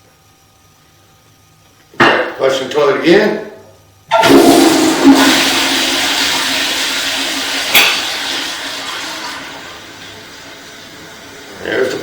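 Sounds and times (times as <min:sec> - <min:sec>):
toilet flushing: 0:04.1 - 0:12.0.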